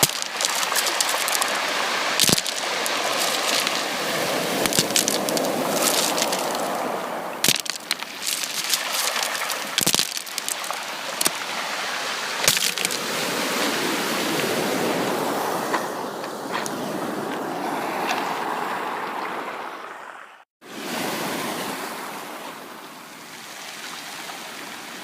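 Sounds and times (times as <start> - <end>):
sharp clicks and crackles: 0.0 - 1.6, 2.2 - 3.9, 4.6 - 6.8, 7.4 - 11.3
sea surf washing: 0.0 - 19.8.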